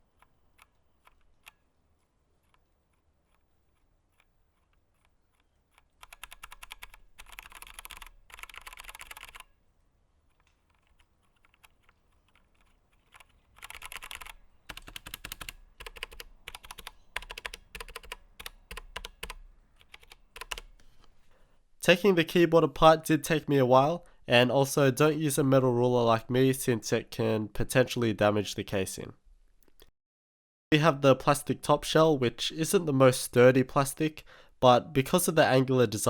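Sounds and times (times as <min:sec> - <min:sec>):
typing on mechanical keyboard: 0:03.3 - 0:09.5, 0:10.3 - 0:20.8.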